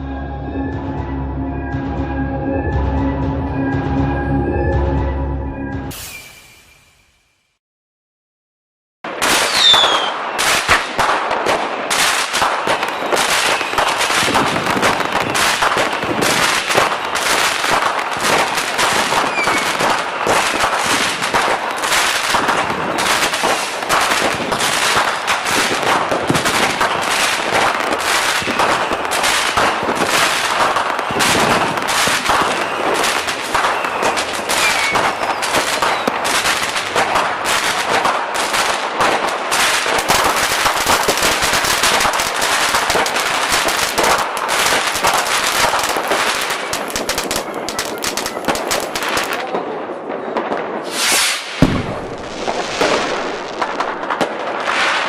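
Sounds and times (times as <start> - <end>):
falling whistle: 5.0 - 7.2, 9.5 - 10.2, 19.2 - 19.7, 33.6 - 36.2
fireworks bangs and crackling: 9.0 - 55.0.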